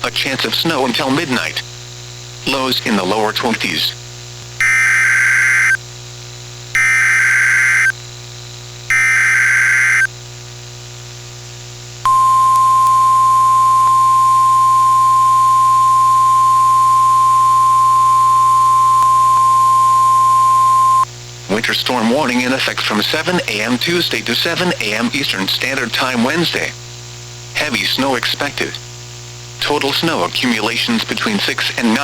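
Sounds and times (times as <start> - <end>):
steady warning alarm tone: 4.6 - 5.8, 6.8 - 7.9, 8.9 - 10.1, 12.1 - 21.1
digital data warble bursts: 8.9 - 10.1.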